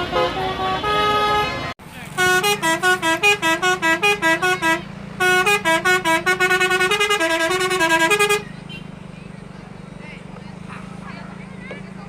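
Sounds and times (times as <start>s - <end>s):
bus horn tooting melody: 0.0s - 8.9s.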